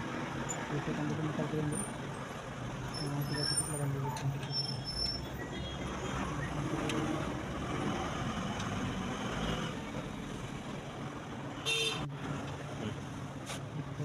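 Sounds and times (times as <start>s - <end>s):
street traffic noise: 0.0s - 14.0s
vehicle horn tooting: 11.6s - 12.0s.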